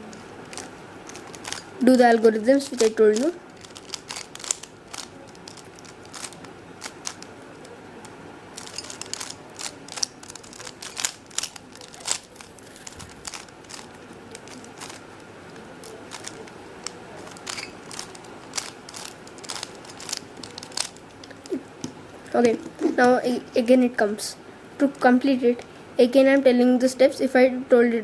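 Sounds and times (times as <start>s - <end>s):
puzzle cube clicking: 0.1s - 7.8s, 8.6s - 23.0s.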